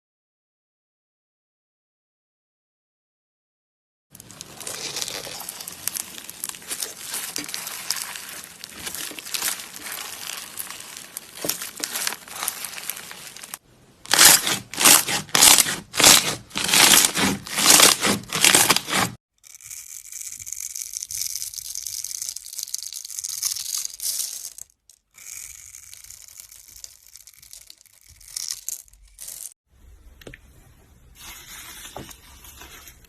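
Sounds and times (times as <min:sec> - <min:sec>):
crunchy material crackling: 0:04.1 - 0:19.2
loud separate crunches: 0:04.2 - 0:19.2.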